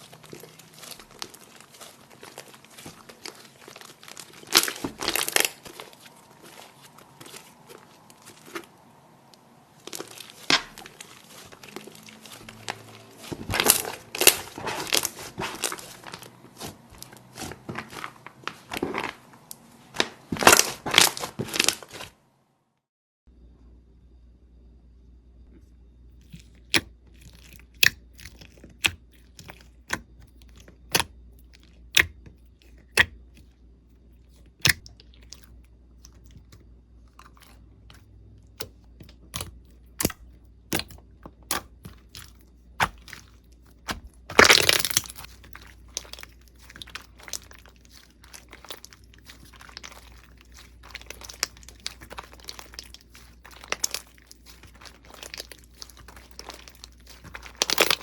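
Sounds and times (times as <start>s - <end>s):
slime crackling: 0.0s - 19.2s, 26.2s - 33.5s, 34.2s - 58.0s
slime popping: 26.3s - 33.5s, 38.6s - 58.0s.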